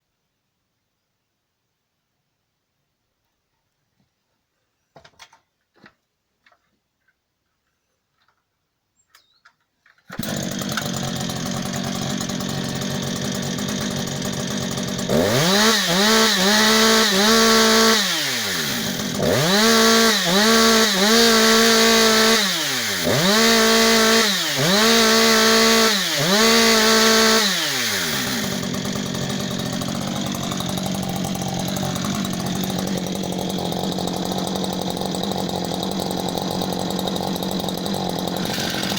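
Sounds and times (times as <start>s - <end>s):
chainsaw idling and revving: 10.1s - 38.9s.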